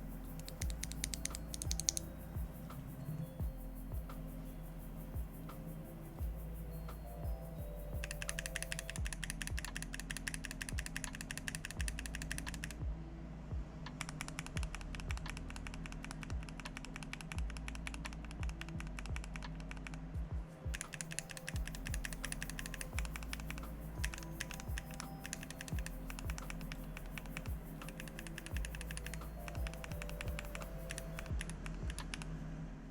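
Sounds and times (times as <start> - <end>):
background music: 0.0 - 32.9
fast mechanical keyboard typing: 0.4 - 2.3, 8.0 - 12.8, 14.0 - 20.0, 20.7 - 32.2.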